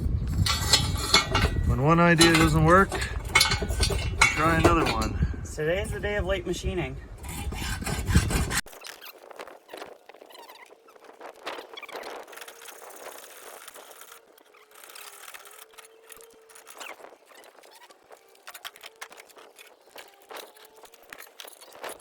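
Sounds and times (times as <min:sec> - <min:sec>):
hacksaw sawing metal: 0:00.3 - 0:05.4, 0:07.1 - 0:08.7.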